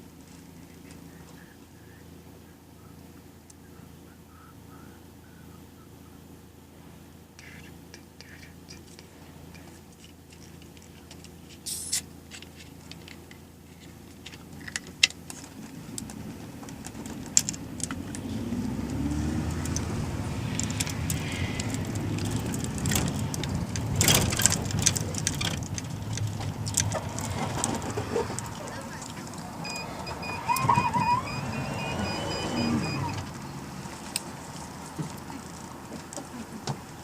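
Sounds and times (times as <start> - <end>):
minibus engine and road noise: 0.0 - 37.0
clicks and rattles: 12.3 - 29.6.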